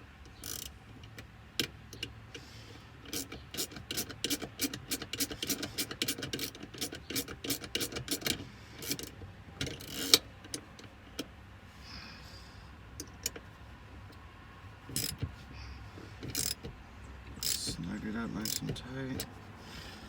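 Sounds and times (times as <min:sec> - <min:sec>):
socket ratchet clicking: 0:00.3 - 0:00.7, 0:03.0 - 0:10.6, 0:14.9 - 0:15.2, 0:16.3 - 0:16.7, 0:17.3 - 0:17.8, 0:18.4 - 0:19.3.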